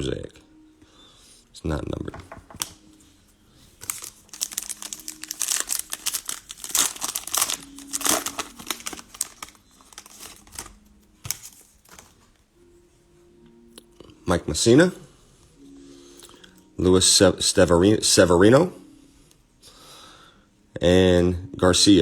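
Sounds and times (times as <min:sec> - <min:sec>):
cellophane wrapper crinkling and tearing: 0:03.8 - 0:12.3.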